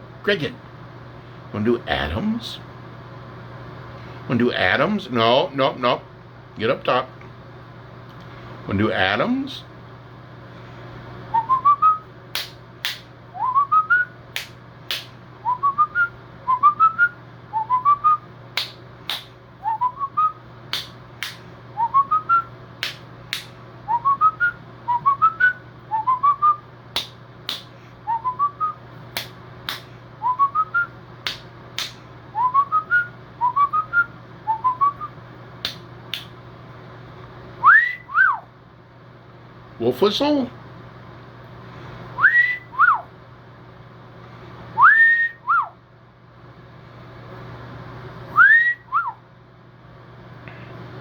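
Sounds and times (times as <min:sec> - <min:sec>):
wolf whistle: 0:11.3 - 0:12.1, 0:37.6 - 0:38.5, 0:42.2 - 0:43.1, 0:44.8 - 0:45.8, 0:48.3 - 0:49.2
whistling rising notes: 0:48.4 - 0:49.2.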